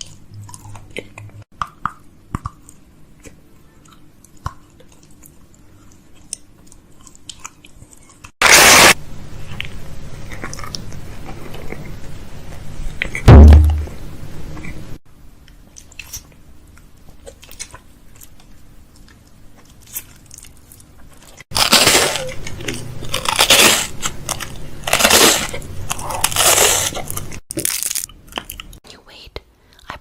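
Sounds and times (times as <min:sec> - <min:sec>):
loud crunching noises: 0:08.2 - 0:09.0, 0:19.6 - 0:28.8.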